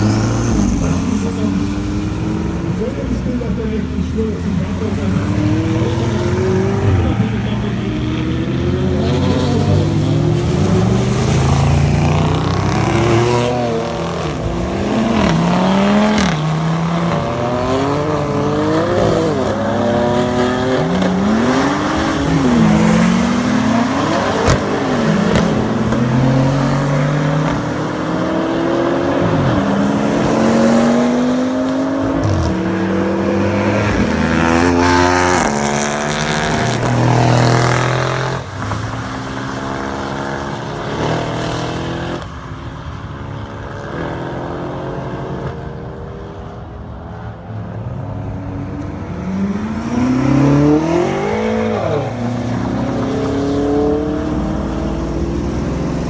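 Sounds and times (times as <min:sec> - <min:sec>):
sports cars passing: 0:00.0 - 0:56.0.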